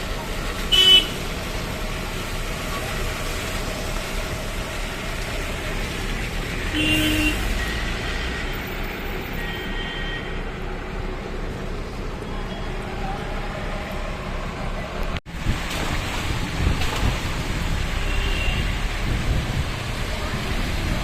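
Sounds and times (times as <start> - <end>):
highway traffic rushing: 0.0 - 21.0
vehicle horn tooting: 0.7 - 1.2, 6.7 - 7.9, 9.3 - 10.4, 18.0 - 18.8.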